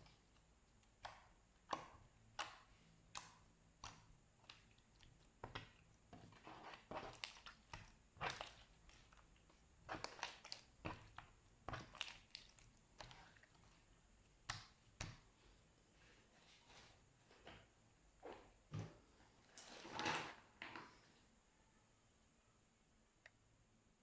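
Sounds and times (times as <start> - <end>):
slime squished with crackles: 0.0 - 15.3.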